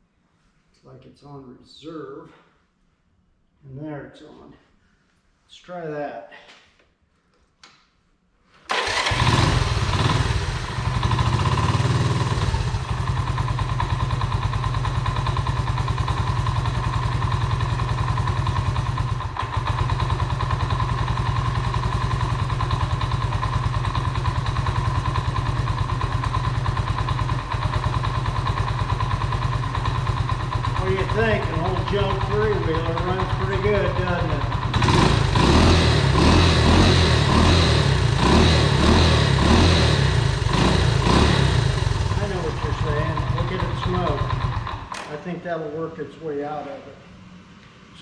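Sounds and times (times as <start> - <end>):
small engine starting and idling: 8.7 - 45.2.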